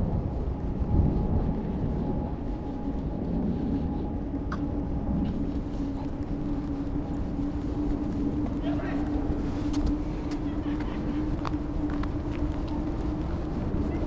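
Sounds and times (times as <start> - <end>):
droning hum: 0.0 - 14.0
vehicle engine rumbling: 0.0 - 14.0.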